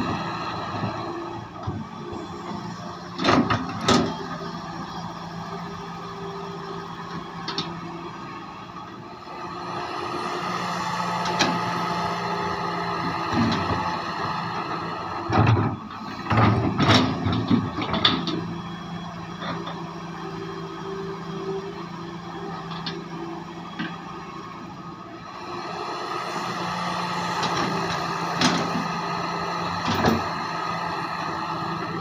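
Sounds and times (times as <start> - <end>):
excavator diesel engine running: 0.0 - 32.0.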